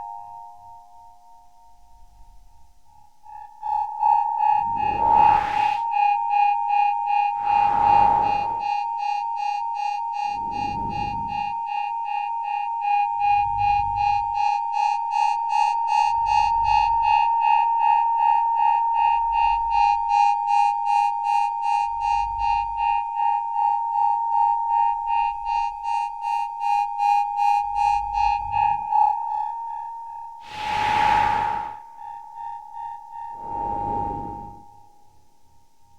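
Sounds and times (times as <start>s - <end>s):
pulsing high synth tone: 4.4s - 5.9s, 7.3s - 8.8s, 30.4s - 31.9s
loud whooshing sweep: 4.5s - 5.9s, 7.3s - 8.8s, 30.4s - 32.0s, 33.4s - 34.6s.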